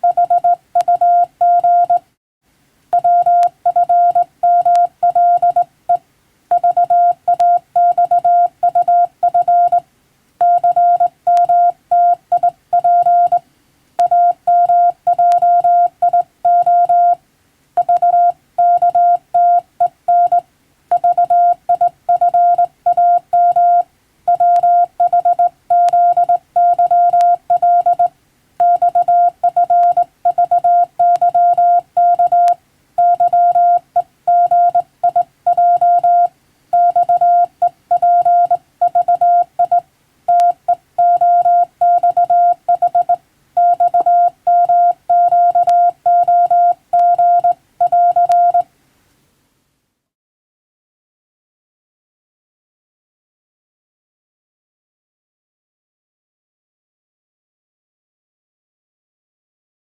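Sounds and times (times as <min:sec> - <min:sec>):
morse code beeps: 0:00.0 - 0:02.0, 0:03.0 - 0:05.7, 0:06.5 - 0:09.8, 0:10.4 - 0:13.4, 0:14.0 - 0:17.2, 0:17.8 - 0:48.6.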